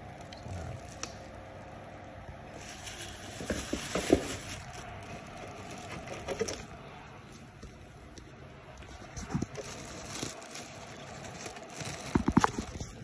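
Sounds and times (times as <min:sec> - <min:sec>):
handling rustling: 0:02.6 - 0:07.6, 0:08.8 - 0:13.0.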